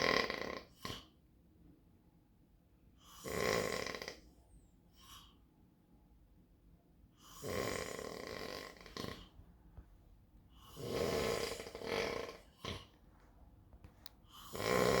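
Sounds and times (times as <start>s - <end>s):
man snoring: 0.0s - 1.0s, 3.2s - 4.2s, 7.3s - 9.3s, 10.6s - 12.9s, 14.4s - 15.0s.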